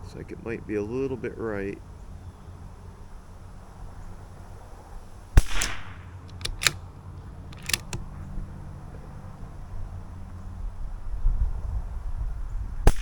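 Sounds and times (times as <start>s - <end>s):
rifle bolt clicks: 5.4s - 6.9s, 7.5s - 8.2s
rifle shot: 5.4s - 6.9s.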